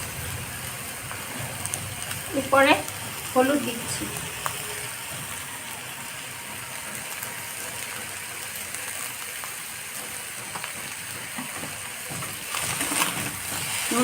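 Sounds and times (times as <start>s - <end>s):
vegetables sizzling in oil: 0.0s - 14.0s.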